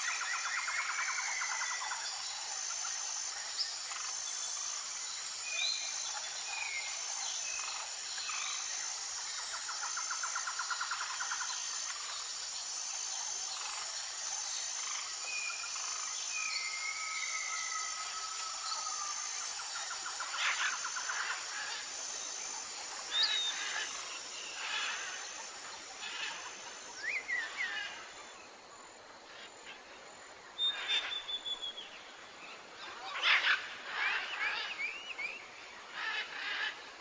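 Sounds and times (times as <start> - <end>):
high insect drone: 0.0 - 37.0
birds whistling: 30.6 - 31.8.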